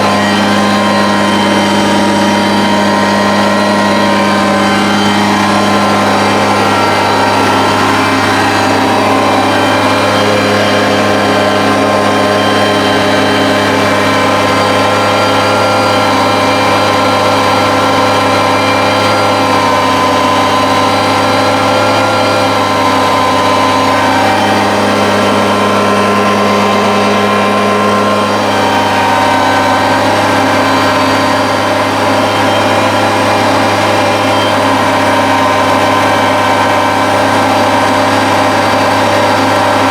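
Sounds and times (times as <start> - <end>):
tractor diesel engine at high throttle: 0.0 - 39.9.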